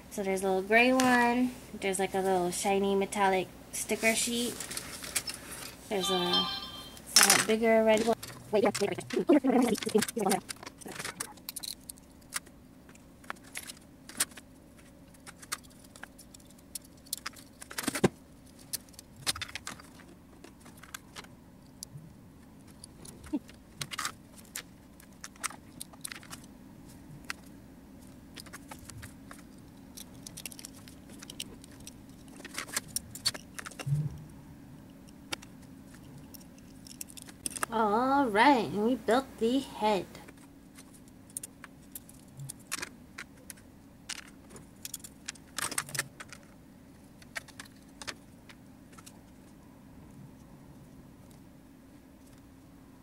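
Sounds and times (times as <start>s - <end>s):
faint steady hum: 0.0s - 53.0s
plastic parts clicking and rattling: 7.2s - 33.9s, 35.0s - 37.7s, 40.3s - 49.6s.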